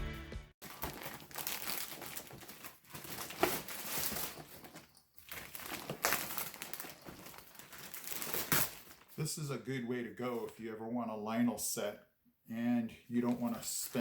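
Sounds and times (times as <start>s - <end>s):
packaging crinkling: 0.6s - 9.2s.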